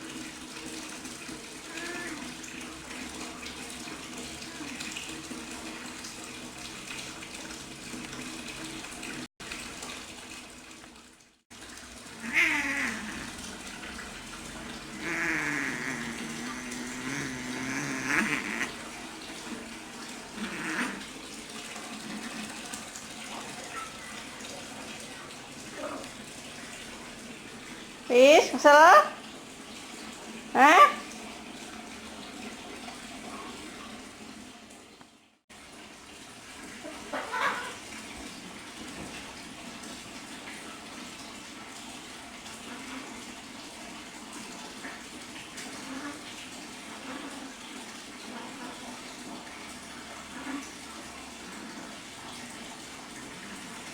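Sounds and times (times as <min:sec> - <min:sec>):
running water rushing: 0:00.0 - 0:53.9
cat yowling: 0:01.7 - 0:02.3, 0:12.2 - 0:13.4, 0:14.8 - 0:18.8, 0:20.4 - 0:21.1, 0:37.2 - 0:37.8.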